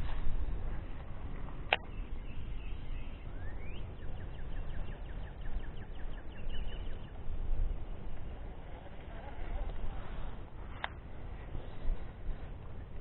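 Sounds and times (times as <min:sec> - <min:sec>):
wind rumble on microphone: 0:00.0 - 0:13.0
sharp click: 0:01.7 - 0:01.9
small bird chirping: 0:01.7 - 0:07.3.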